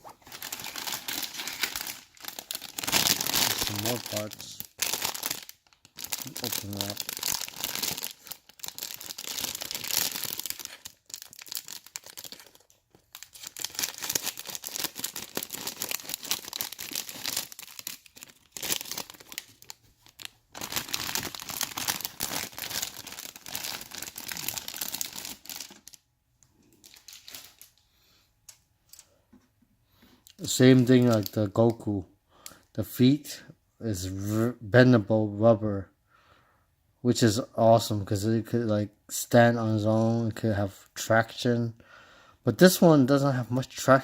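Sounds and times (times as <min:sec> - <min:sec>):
plastic bag crinkling: 0:00.0 - 0:26.0, 0:26.6 - 0:27.8.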